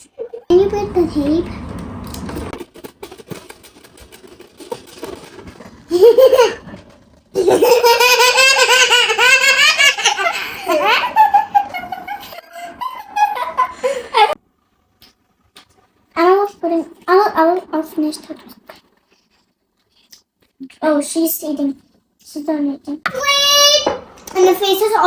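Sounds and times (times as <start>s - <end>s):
children laughing: 5.9s - 14.4s.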